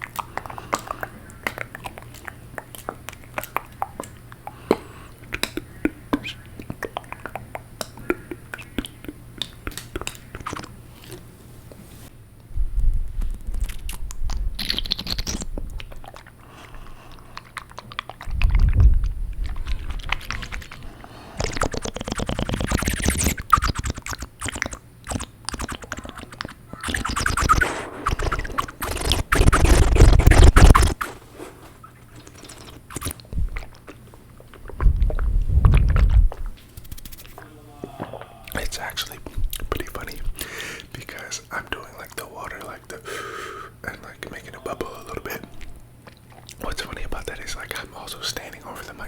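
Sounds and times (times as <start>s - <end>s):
tongue clicks and smacks: 0.0s - 11.8s, 13.2s - 31.1s, 31.8s - 37.4s, 44.2s - 48.2s
water swishing in mouth: 15.7s - 37.4s
deep rumble: 18.2s - 20.9s, 34.7s - 36.6s.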